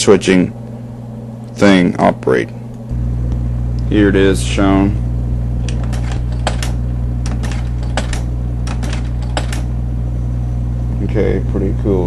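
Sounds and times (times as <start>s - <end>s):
projector motor hum: 0.0s - 12.0s
slide projector mechanism clicking: 5.6s - 9.7s.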